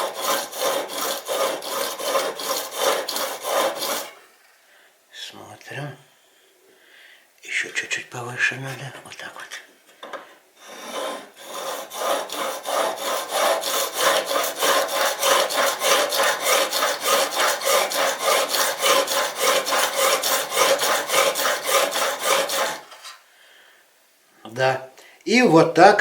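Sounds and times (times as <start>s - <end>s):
whetstone rasping on steel blade: 0.0s - 4.2s, 10.8s - 22.9s.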